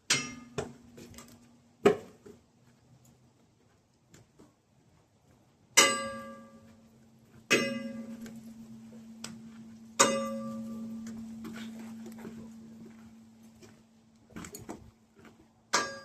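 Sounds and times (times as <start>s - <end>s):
low ringing tone: 5.9s - 6.9s, 7.6s - 13.6s
resonant metal object clanging: 7.5s - 12.8s.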